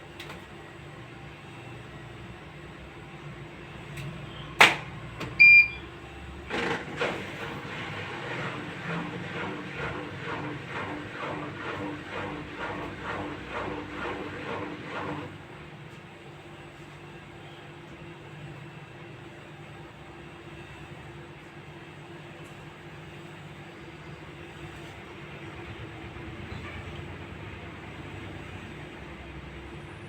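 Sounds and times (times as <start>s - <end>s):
washing machine running rhythmically: 0.0s - 30.0s
short electronic beep: 5.4s - 5.9s.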